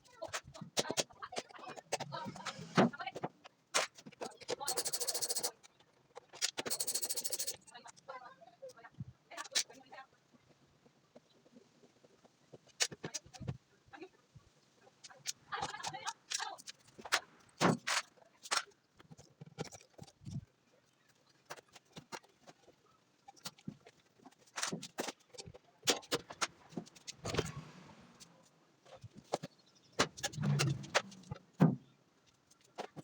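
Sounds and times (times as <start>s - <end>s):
hand tools clicking and clattering: 6.2s - 7.6s.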